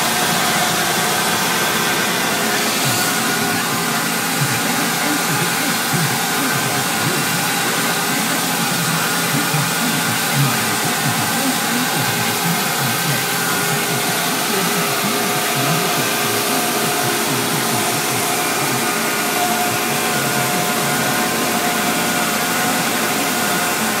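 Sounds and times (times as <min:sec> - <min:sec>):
faint steady tones: 0:00.0 - 0:24.0
tractor rushing noise: 0:00.0 - 0:24.0.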